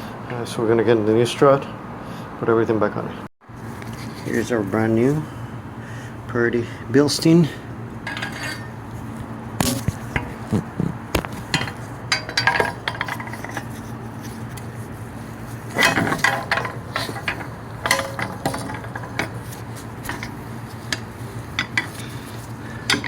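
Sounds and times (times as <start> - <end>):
steady low hum: 0.0 - 23.0
metal parts clinking: 8.0 - 8.8, 11.4 - 13.8, 15.6 - 23.0.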